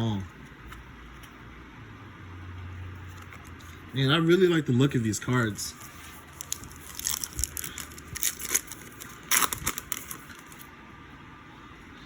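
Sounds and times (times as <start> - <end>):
card packaging crinkles and clicks: 6.3 - 10.7.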